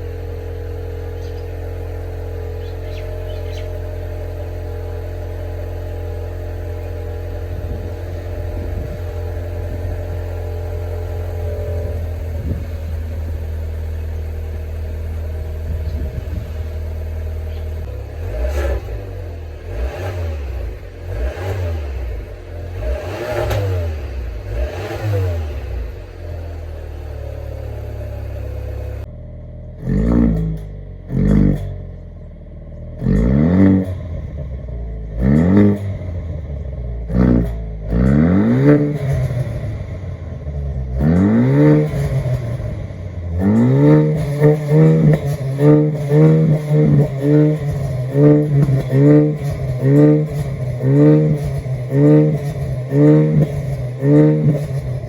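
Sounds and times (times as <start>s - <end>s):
car engine idling and revving: 0.0s - 55.0s
sharp throttle blips: 2.5s - 4.6s.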